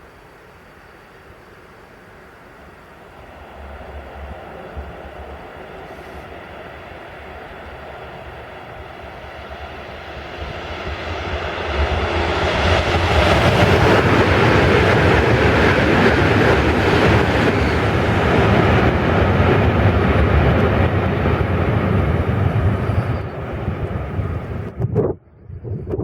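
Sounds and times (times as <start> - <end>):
high-speed train rushing past: 0.0 - 25.8.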